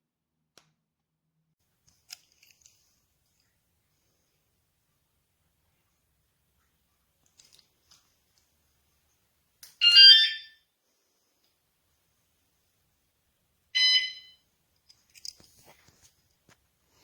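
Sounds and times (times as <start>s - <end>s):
electronic bike alarm chirps: 9.8s - 10.6s, 13.8s - 14.4s.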